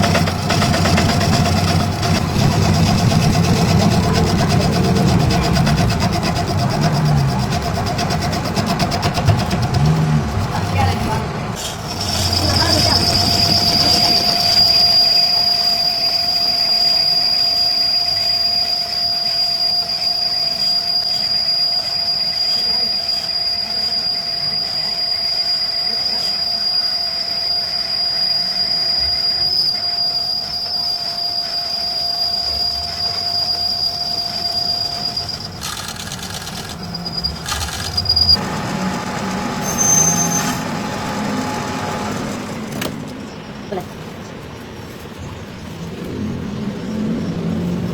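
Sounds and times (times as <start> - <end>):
knocks and clatter: 0.0 - 14.7
high-pitched metallic squeal: 0.0 - 43.4.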